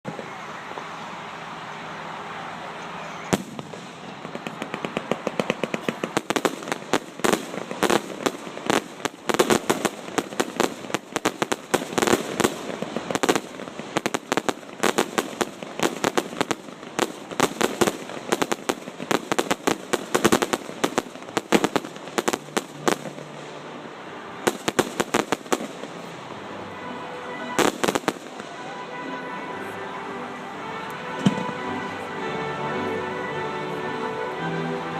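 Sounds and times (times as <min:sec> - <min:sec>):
fireworks cracking and popping: 0:00.0 - 0:01.8, 0:02.7 - 0:26.4, 0:27.6 - 0:28.8, 0:31.2 - 0:31.7.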